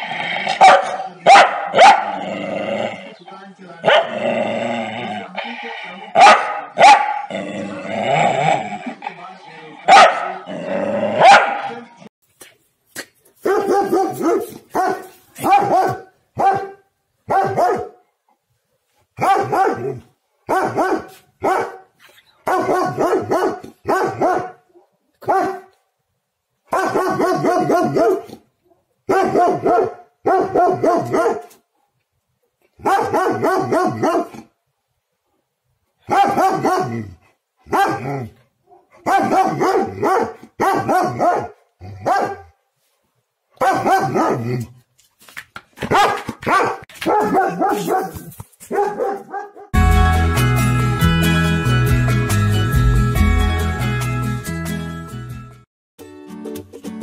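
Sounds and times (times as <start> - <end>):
dog barking angrily: 0.4 - 2.5, 3.8 - 4.4, 6.1 - 7.5, 9.8 - 11.8, 13.4 - 18.0, 19.2 - 24.6, 25.2 - 25.7, 26.7 - 28.4, 29.1 - 31.6, 32.8 - 34.5, 36.0 - 42.6, 43.6 - 44.7, 45.8 - 49.8.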